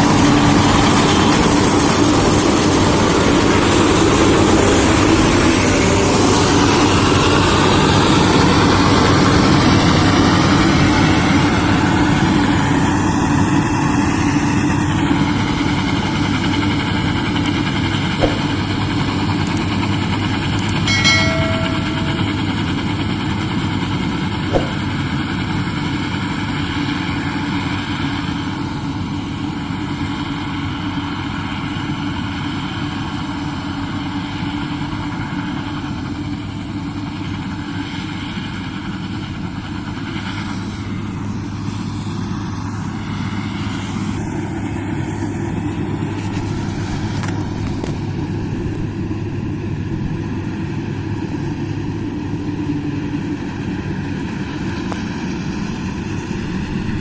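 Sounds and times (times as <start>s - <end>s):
combine harvester running: 0.0s - 57.0s
short pitched tone: 20.9s - 22.8s.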